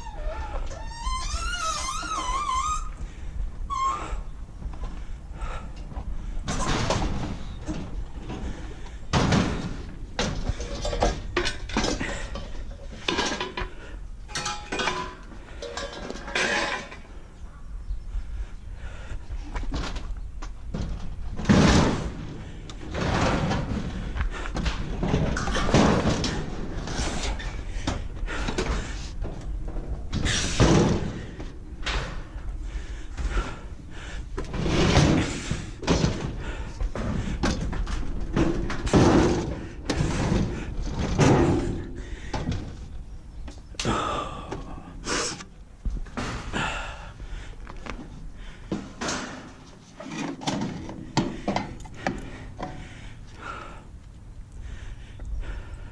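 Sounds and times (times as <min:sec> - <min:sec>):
bangs and heavy thuds: 0:06.4 - 0:12.2, 0:20.7 - 0:32.3.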